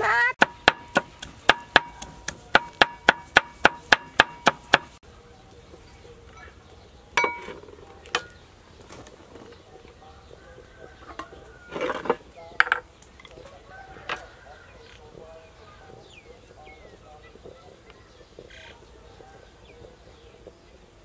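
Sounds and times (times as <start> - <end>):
knife chopping on cutting board: 0.4 - 5.0
kitchen utensils clinking: 7.2 - 8.4.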